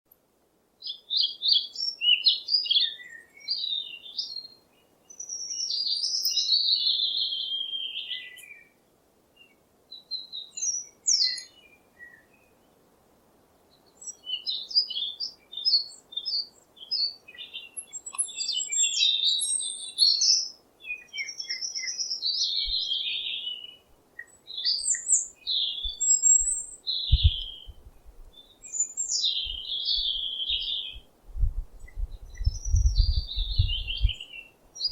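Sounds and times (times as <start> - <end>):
songbird singing: 0.8 - 8.8, 9.4 - 12.9, 13.6 - 34.9
low thumps: 31.3 - 34.2.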